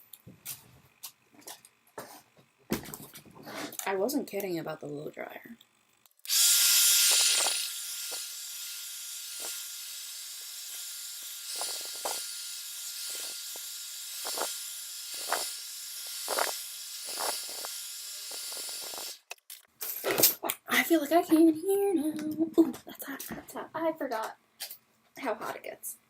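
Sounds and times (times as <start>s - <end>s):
hair dryer blowing: 6.3s - 19.2s.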